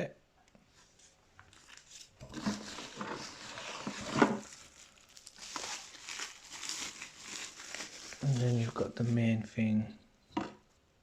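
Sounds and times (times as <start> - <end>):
packaging crinkling and rustling: 1.4 - 9.5.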